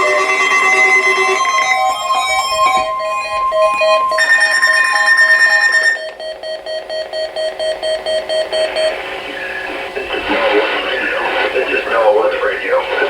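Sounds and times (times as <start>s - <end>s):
rapid electronic beeping: 0.0s - 13.0s
steady high alarm tone: 0.0s - 13.0s
low alert tone: 0.3s - 5.7s.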